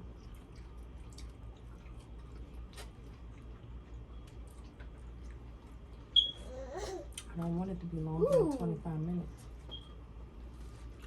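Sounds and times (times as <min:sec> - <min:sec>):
wet chewing and squishing: 0:00.0 - 0:06.3
small mouth clicks and smacks: 0:00.1 - 0:05.6, 0:07.1 - 0:07.4.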